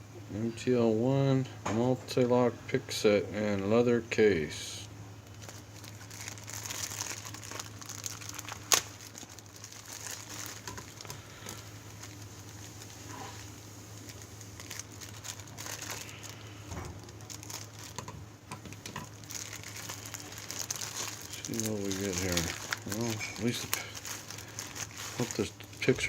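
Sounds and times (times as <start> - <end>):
packaging crinkling: 5.2 - 26.0.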